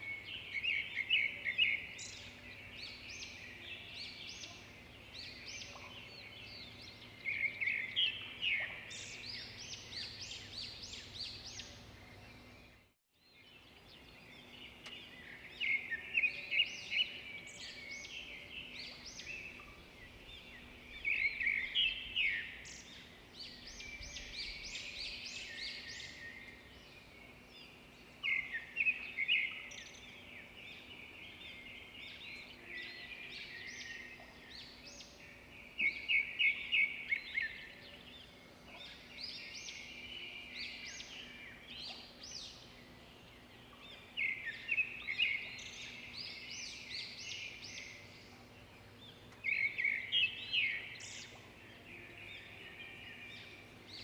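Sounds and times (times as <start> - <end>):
small birds chirping: 0.0 - 54.0.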